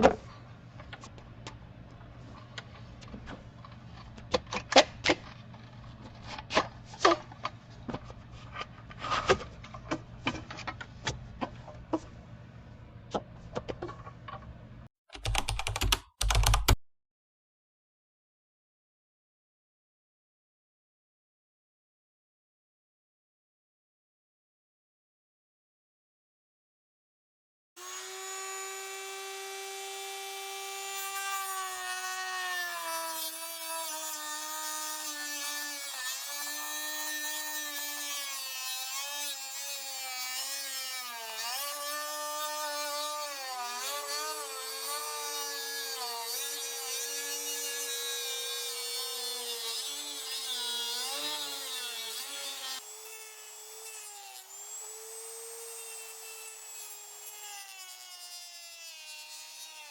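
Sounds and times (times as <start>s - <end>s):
power tool motor whining: 27.8s - 35.0s.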